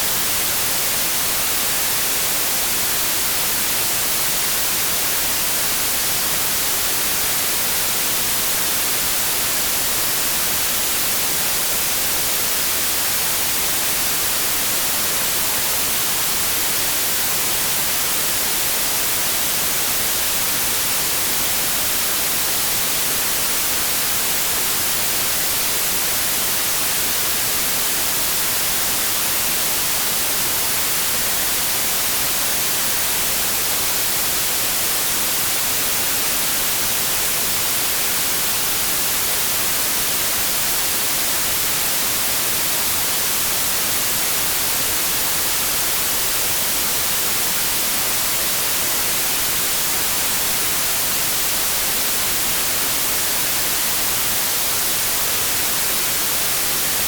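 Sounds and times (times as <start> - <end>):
white noise hiss: 0.0 - 57.0.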